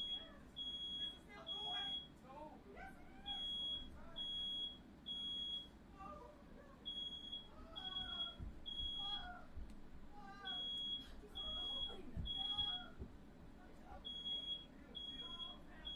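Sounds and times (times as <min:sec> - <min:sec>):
smoke alarm beeping: 0:00.0 - 0:02.2, 0:03.3 - 0:05.8, 0:06.8 - 0:09.3, 0:10.4 - 0:13.0, 0:14.0 - 0:15.9.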